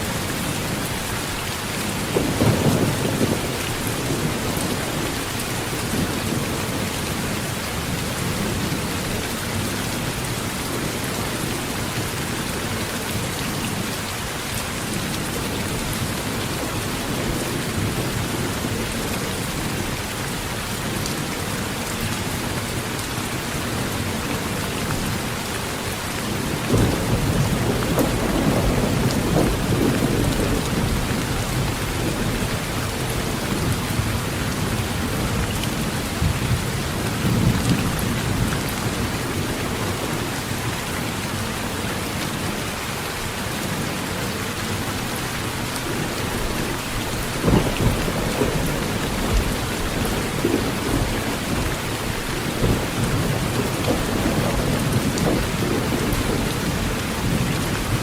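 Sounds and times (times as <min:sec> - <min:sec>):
heavy rain on a tin roof: 0:00.0 - 0:58.0
thunder rumbling: 0:26.3 - 0:40.0, 0:46.2 - 0:58.0.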